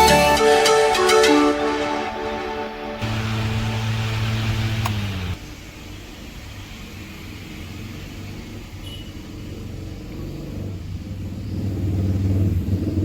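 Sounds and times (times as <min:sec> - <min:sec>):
airflow buffeting microphone: 0:03.0 - 0:05.4
electric fan running: 0:03.0 - 0:05.4.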